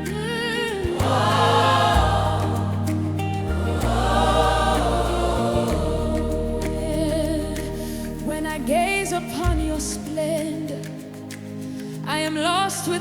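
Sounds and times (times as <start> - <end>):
choir holding long notes: 0.0 - 8.6
bass line: 0.0 - 10.1.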